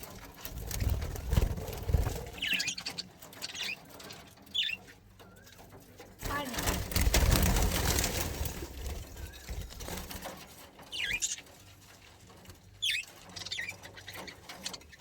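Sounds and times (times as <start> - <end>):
budgies chirping: 0.0 - 15.0.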